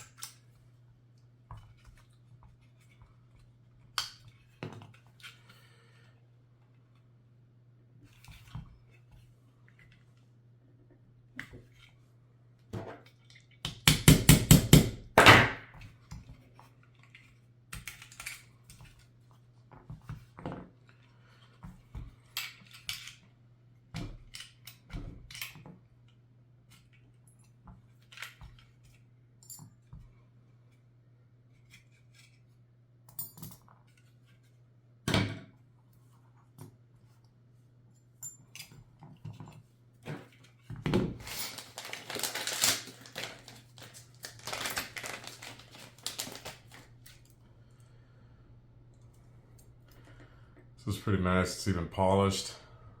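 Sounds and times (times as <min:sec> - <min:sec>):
pistol parts clicking and clinking: 0:00.0 - 0:00.5, 0:17.8 - 0:18.5.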